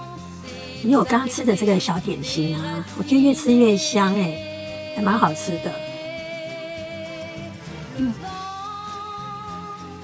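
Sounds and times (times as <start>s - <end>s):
pop music with held vocal notes: 0.0s - 10.0s.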